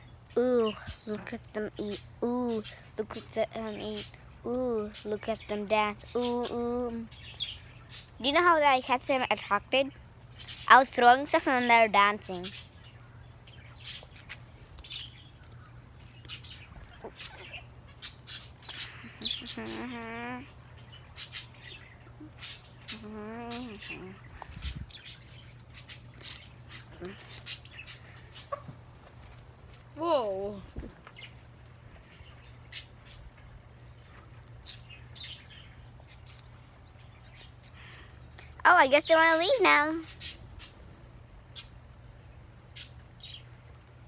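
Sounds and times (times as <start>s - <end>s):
birds chirping: 0.0s - 44.0s
low steady hum: 0.0s - 44.0s
faint bird chirps: 14.8s - 28.7s.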